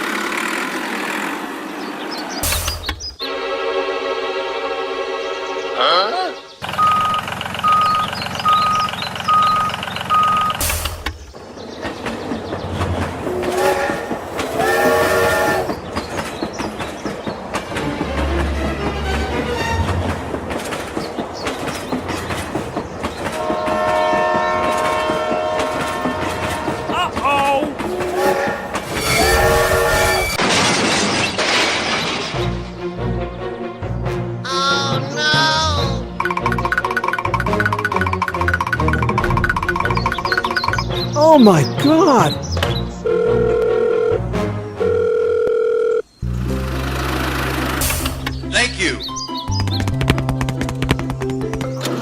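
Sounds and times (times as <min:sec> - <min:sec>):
passing train rushing: 0:00.0 - 0:05.8, 0:10.9 - 0:30.4
vehicle reversing alarm beeps: 0:06.7 - 0:10.7
train horn blasts: 0:13.2 - 0:15.8, 0:23.3 - 0:27.0, 0:27.9 - 0:30.4.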